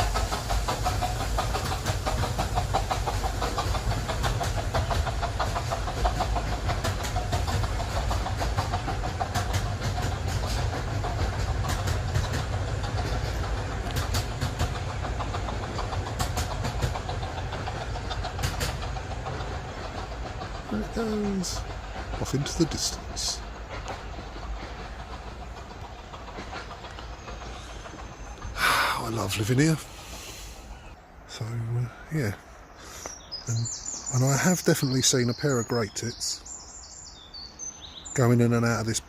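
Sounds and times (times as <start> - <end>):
wheels clicking over rail joints: 0.0 - 30.7
steam locomotive chuffing: 0.0 - 39.0.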